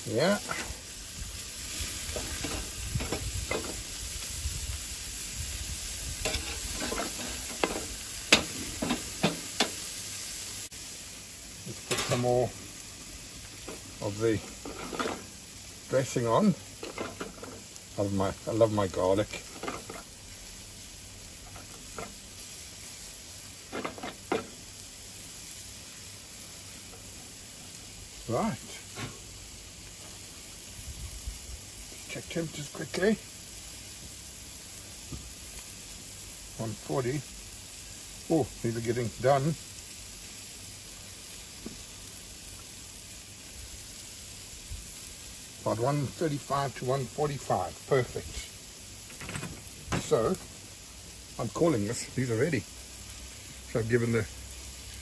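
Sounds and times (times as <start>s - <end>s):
meat sizzling on a grill: 0.0s - 55.0s
metal spatula scraping a grate: 0.4s - 0.8s, 1.8s - 3.8s, 6.2s - 9.8s, 11.8s - 12.3s, 14.4s - 15.3s, 19.3s - 20.1s, 23.7s - 24.6s.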